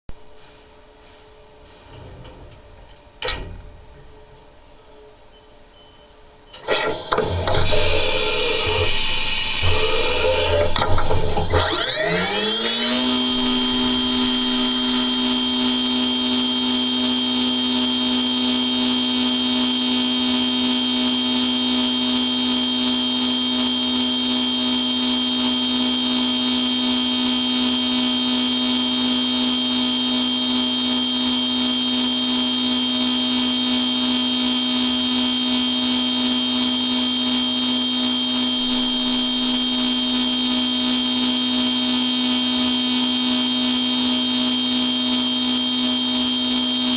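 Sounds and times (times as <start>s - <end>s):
machine spindle whining: 6.5s - 17.3s, 35.2s - 46.9s.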